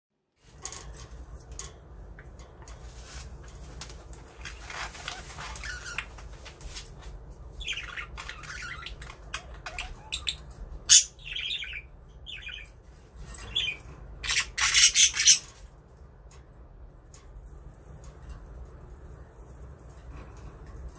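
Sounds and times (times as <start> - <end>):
budgerigars chirping: 7.6 - 12.8, 13.4 - 15.6.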